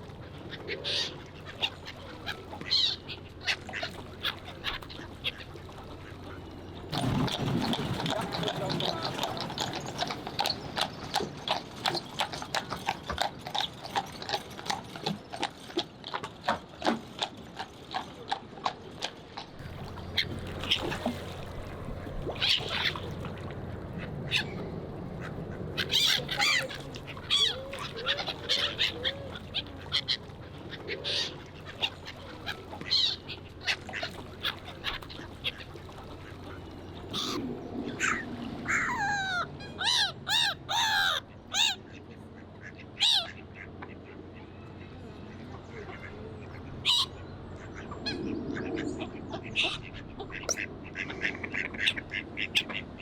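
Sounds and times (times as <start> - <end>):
ducks quacking and calling: 0.0 - 11.6, 22.3 - 23.3, 23.9 - 44.4, 45.2 - 53.0
low steady hum: 18.8 - 53.0.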